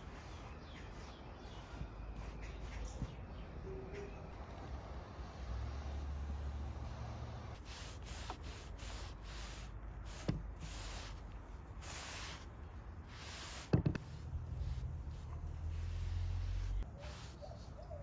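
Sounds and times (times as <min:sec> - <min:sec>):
brush swishing on wood: 0:07.6 - 0:18.0.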